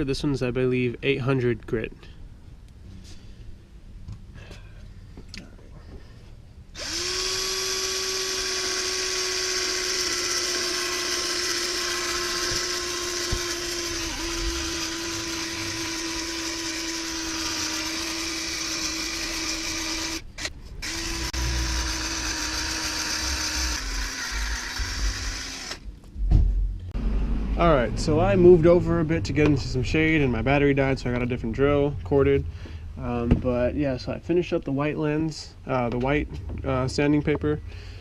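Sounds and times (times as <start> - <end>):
cordless drill motor whine: 6.8 - 25.8.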